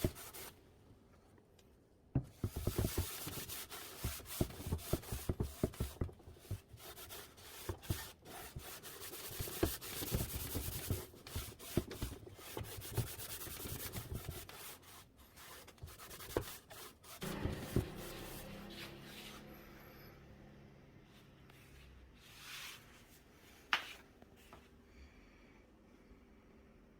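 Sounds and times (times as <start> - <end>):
low hum: 17.2 - 21.4.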